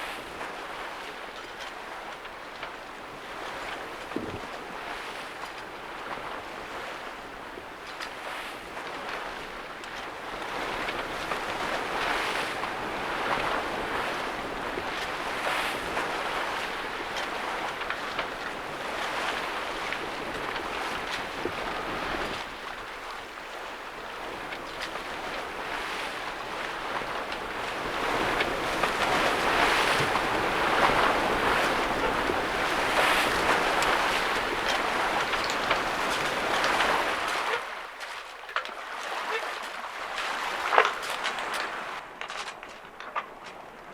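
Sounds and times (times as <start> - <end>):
water splashing along boat hull: 0.0 - 43.6
wind buffeting microphone: 10.4 - 37.6.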